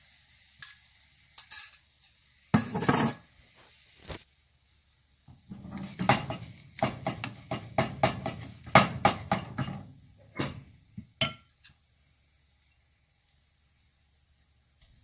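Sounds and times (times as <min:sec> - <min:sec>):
utensil knocking on cookware: 0:02.6 - 0:03.2, 0:05.5 - 0:11.5.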